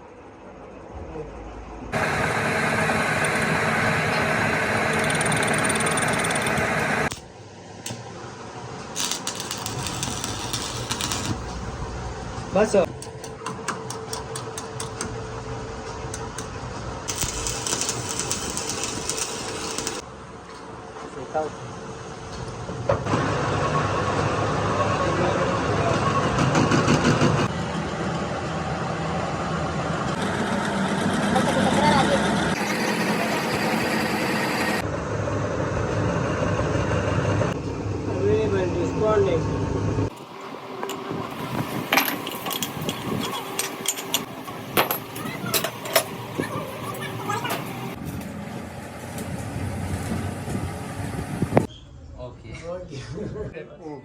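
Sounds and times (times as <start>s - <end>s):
machine running loudly: 1.9s - 7.2s, 17.1s - 20.0s, 28.7s - 41.5s.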